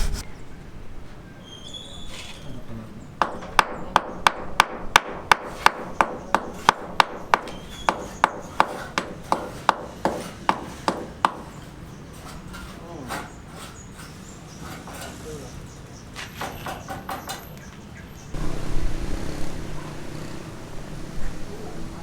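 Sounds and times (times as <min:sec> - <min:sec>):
hand tool knocking on wood: 0:03.2 - 0:13.7.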